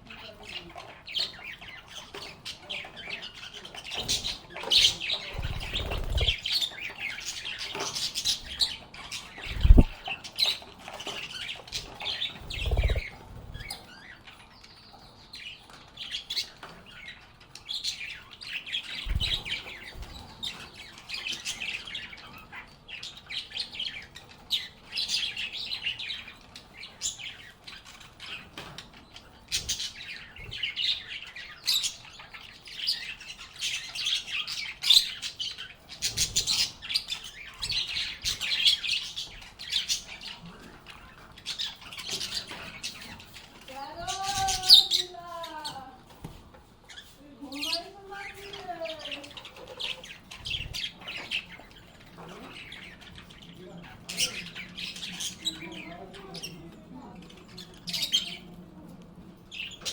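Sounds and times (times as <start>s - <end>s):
lovebirds chirping and squawking: 0.0s - 59.9s
low thumps: 9.5s - 10.0s.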